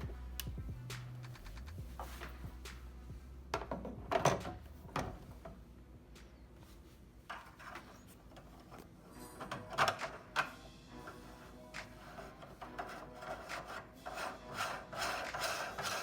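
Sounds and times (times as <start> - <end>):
plastic plumbing parts knocking: 3.5 - 5.6.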